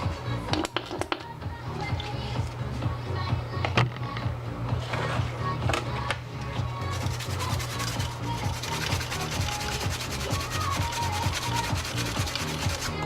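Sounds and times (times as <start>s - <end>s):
background music with low bass: 0.0s - 13.0s
fast scratchy rubbing: 6.9s - 13.0s.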